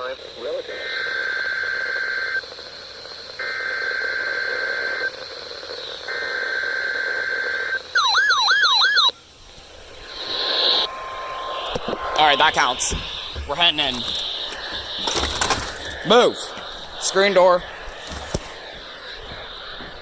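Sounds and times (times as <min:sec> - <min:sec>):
warbling electronic alarm tone: 0:06.1 - 0:20.0
buzzy two-tone data bursts: 0:09.0 - 0:20.0.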